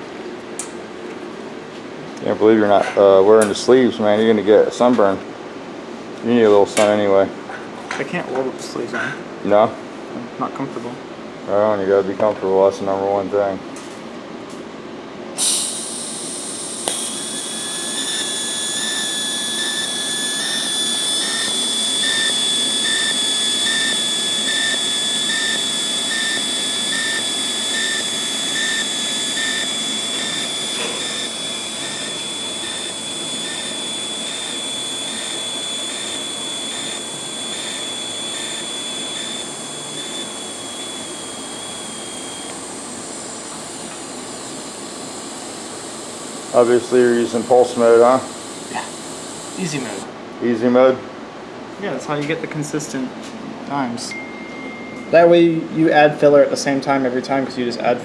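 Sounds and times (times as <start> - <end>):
pulsing welding hiss: 15.4 - 50.1
high steady welding whine: 15.4 - 50.2.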